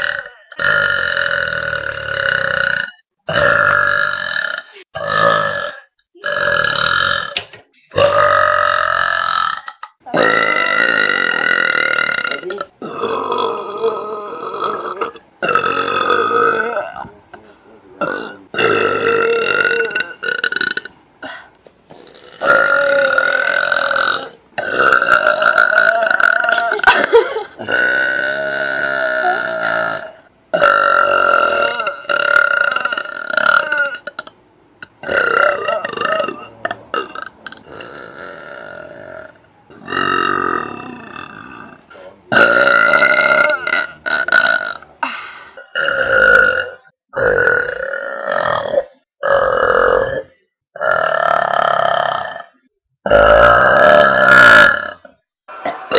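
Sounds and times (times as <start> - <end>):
girls belching loudly: 0.0 - 7.4, 8.0 - 17.1, 18.0 - 20.9, 22.0 - 52.5, 53.1 - 55.9.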